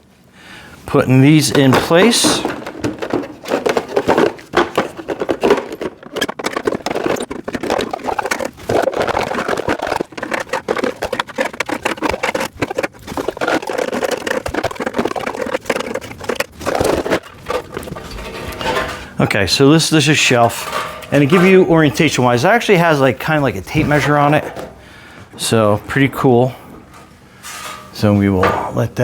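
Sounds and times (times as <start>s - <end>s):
rack parts knocking and clicking: 1.3s - 10.6s, 19.8s - 24.8s, 25.8s - 28.8s.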